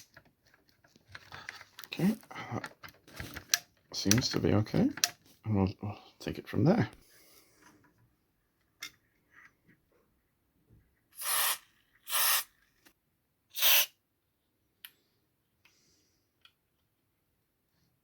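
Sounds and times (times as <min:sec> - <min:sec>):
aerosol can hissing: 0:11.2 - 0:12.5, 0:13.5 - 0:14.0.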